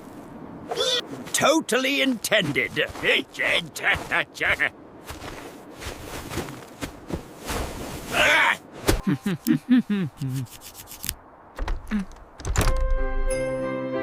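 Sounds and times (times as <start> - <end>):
character groaning and grunting: 0.7 - 1.1
music: 12.7 - 14.0.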